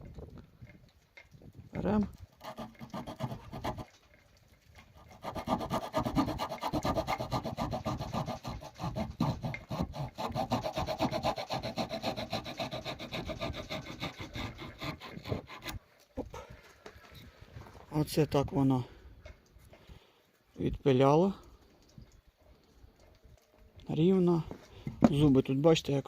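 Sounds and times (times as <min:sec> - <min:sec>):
small saw cutting wood: 0:02.3 - 0:04.0, 0:04.9 - 0:16.2.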